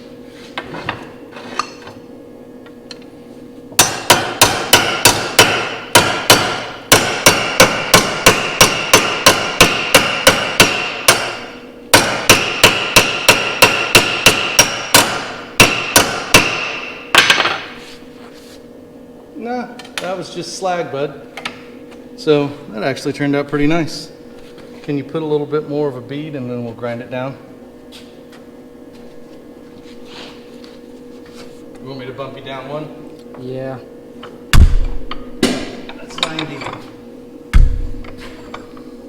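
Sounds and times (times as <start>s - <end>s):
hammer striking steel rod: 3.8s - 17.6s.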